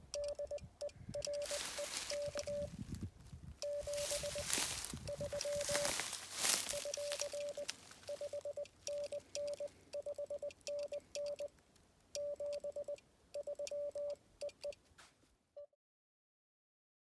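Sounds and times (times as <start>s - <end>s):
morse code beeps: 0.0s - 2.9s, 3.6s - 11.5s, 12.2s - 14.8s.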